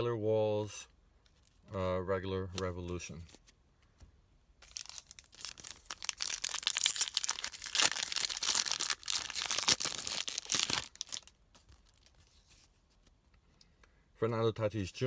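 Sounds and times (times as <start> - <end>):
wrapper tearing and crinkling: 4.6 - 12.4.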